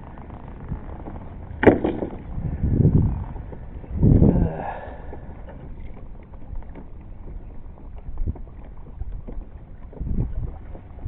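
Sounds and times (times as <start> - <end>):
water lapping against hull: 0.0 - 11.0
wind rumbling on microphone: 0.0 - 11.0.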